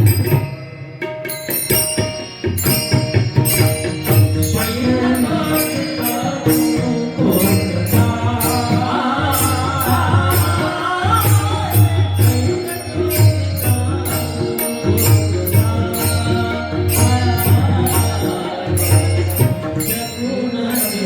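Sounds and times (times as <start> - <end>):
small hand cymbals: 0.0 - 21.0
person singing: 4.3 - 21.0.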